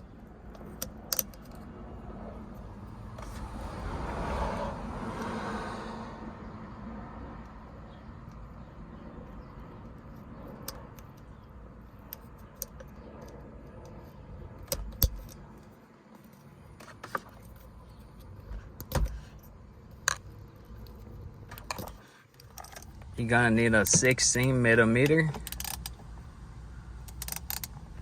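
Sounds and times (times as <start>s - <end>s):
clicks and knocks of tools: 23.8s - 26.1s, 27.1s - 27.8s.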